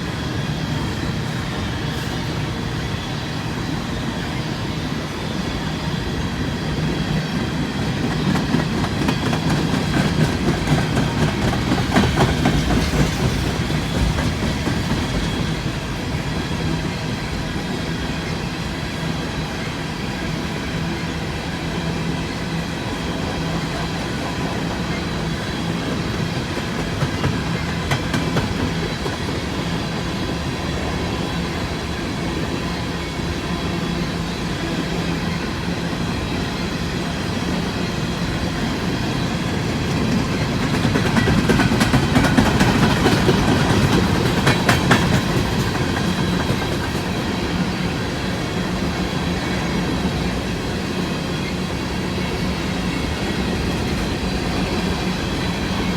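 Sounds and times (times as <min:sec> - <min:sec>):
train wheels clicking over rail joints: 0:07.4 - 0:16.5, 0:24.3 - 0:30.0, 0:38.4 - 0:48.0.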